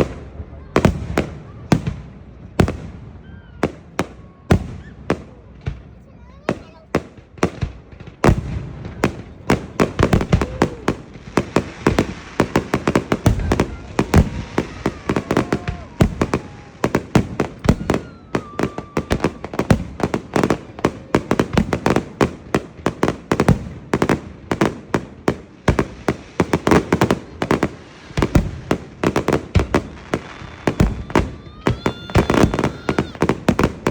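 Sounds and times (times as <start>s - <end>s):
fireworks bangs and crackles: 0.0s - 33.9s.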